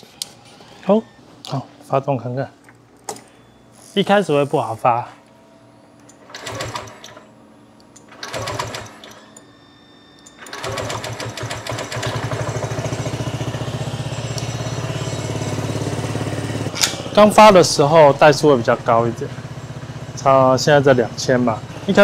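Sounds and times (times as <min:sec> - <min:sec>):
electric starter cranking: 0:06.1 - 0:07.3, 0:08.0 - 0:09.3, 0:10.3 - 0:22.0
scooter engine idling: 0:10.6 - 0:22.0.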